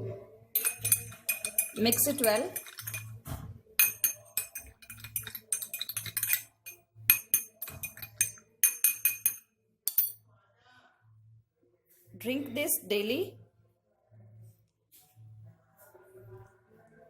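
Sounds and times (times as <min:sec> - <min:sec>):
spoon clinking against vessel: 0:00.6 - 0:03.2, 0:03.8 - 0:10.2.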